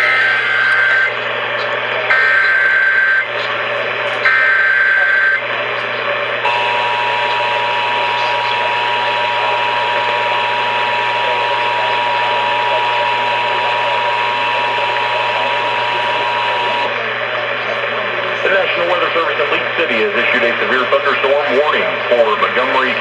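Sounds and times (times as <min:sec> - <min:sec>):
radio hiss: 0:00.0 - 0:23.0
warbling data bursts: 0:06.5 - 0:16.9.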